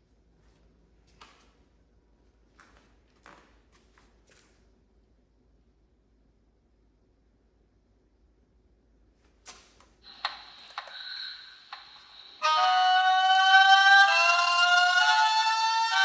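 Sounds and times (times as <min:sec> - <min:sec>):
faint high steady whine: 0:04.8 - 0:13.0
clicks: 0:09.5 - 0:12.4
siren high-low tone: 0:12.4 - 0:16.0.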